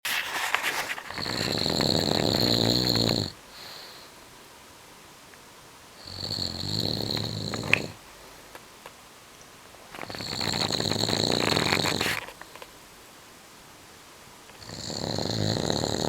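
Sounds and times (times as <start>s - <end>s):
rattling snores: 1.1s - 3.4s, 6.0s - 8.0s, 9.9s - 12.6s, 14.6s - 16.0s.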